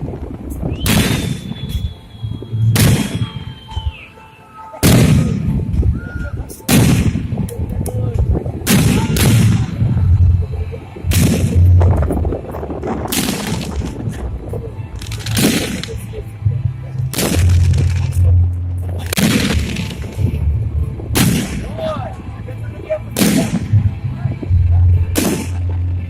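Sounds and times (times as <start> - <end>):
fireworks bursting with booms: 0.7 - 2.0, 2.7 - 3.4, 4.8 - 5.6, 6.7 - 7.3, 19.1 - 20.2.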